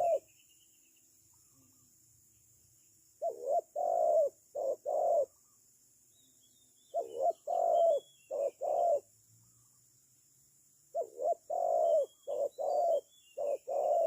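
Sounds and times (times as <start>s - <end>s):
dove cooing: 0.0s - 0.3s, 3.2s - 5.4s, 6.9s - 9.1s, 10.9s - 14.0s
faint high bird chirps: 0.0s - 14.0s.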